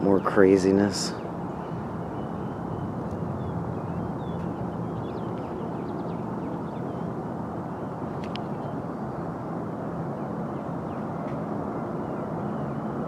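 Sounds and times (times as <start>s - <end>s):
low rumble with faint hum: 0.0s - 9.5s.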